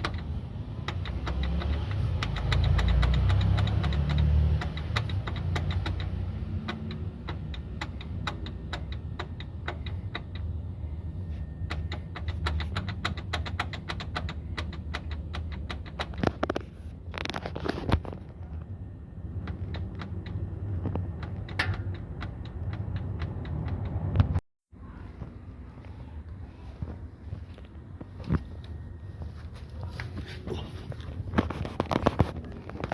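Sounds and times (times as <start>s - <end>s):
car engine humming: 0.0s - 24.4s
suspension clicks and knocks: 0.0s - 24.4s, 26.8s - 32.9s.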